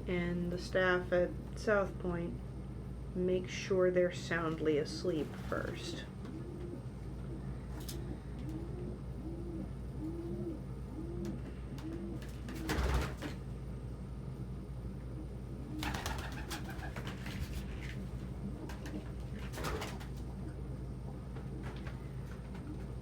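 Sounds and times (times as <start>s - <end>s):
pigeons cooing: 4.8s - 13.4s, 14.9s - 23.0s.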